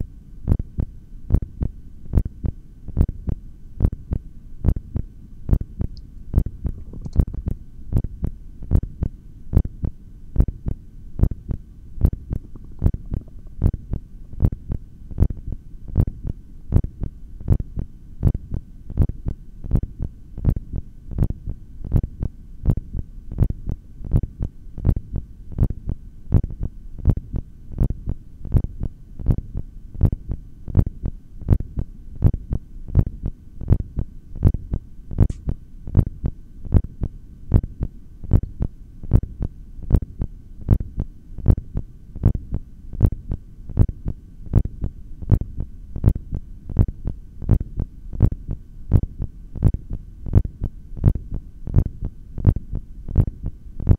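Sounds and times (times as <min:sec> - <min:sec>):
low hum: 0:00.0 - 0:53.9
heartbeat through stethoscope: 0:00.5 - 0:20.6, 0:21.2 - 0:53.9
faint click: 0:35.2 - 0:35.5.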